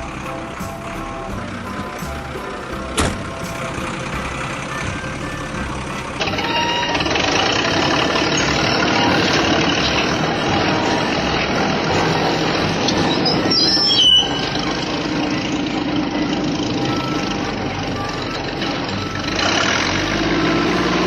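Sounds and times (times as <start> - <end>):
truck engine running: 0.0 - 21.0
sharp knock: 3.0 - 3.6.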